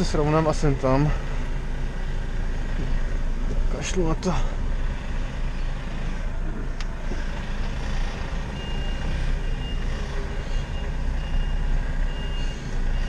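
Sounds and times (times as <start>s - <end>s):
truck engine running: 0.0s - 13.0s
truck reversing beeper: 8.1s - 13.0s.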